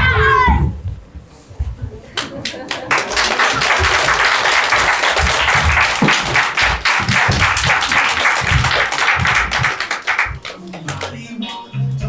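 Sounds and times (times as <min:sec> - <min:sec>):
audience applauding: 0:02.2 - 0:11.3
music playing: 0:06.8 - 0:12.0.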